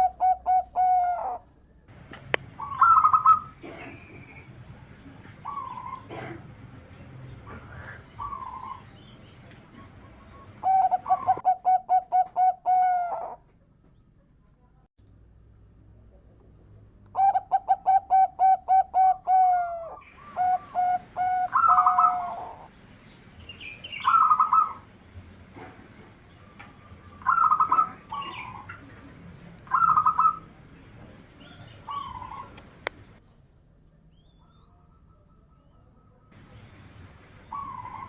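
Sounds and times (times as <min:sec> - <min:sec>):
dove cooing: 0:00.0 - 0:01.5, 0:02.2 - 0:06.6, 0:07.5 - 0:08.9, 0:09.7 - 0:13.4, 0:17.2 - 0:22.7, 0:24.0 - 0:24.9, 0:26.4 - 0:30.6, 0:31.4 - 0:33.2, 0:37.5 - 0:38.0.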